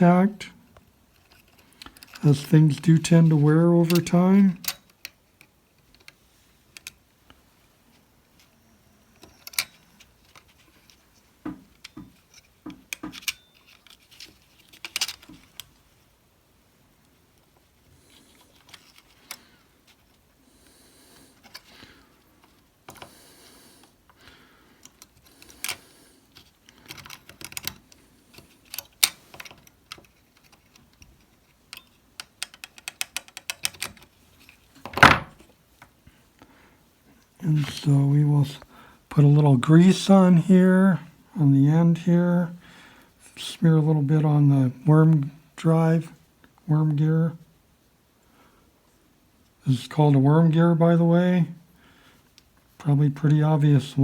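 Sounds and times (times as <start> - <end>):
small plastic parts clicking: 3.9 - 7.0, 11.7 - 15.8, 24.8 - 35.0.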